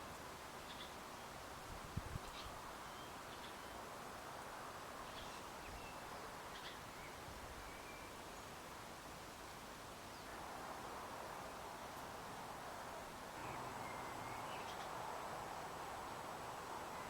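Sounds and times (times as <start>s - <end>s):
steady low hiss: 0.0s - 17.0s
faint bird chirps: 5.0s - 8.5s.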